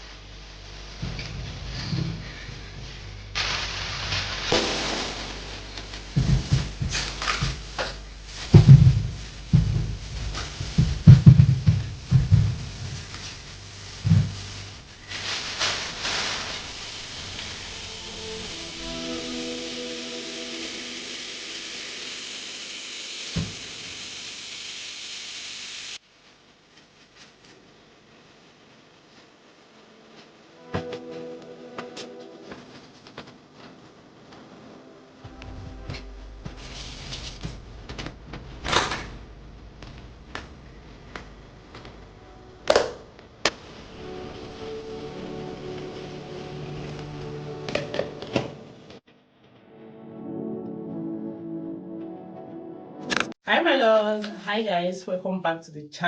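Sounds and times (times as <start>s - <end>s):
steady hiss: 0.0s - 49.0s
thump: 8.6s - 12.7s
soft background music: 17.3s - 21.4s, 29.9s - 33.0s, 34.2s - 37.4s, 41.7s - 49.0s, 49.6s - 53.3s.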